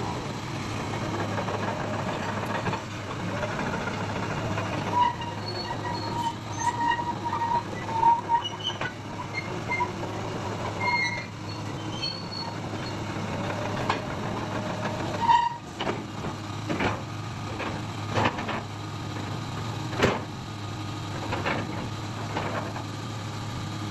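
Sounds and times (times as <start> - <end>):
excavator running: 0.0 - 23.9
short metallic squeals: 4.3 - 13.8, 15.0 - 15.8.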